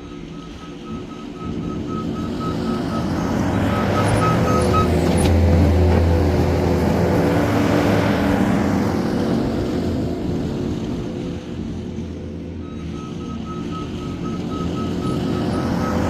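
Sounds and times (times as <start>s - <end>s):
reversing alarm beeps: 0.0s - 5.0s, 12.6s - 16.0s
diesel engine under load: 0.0s - 16.0s.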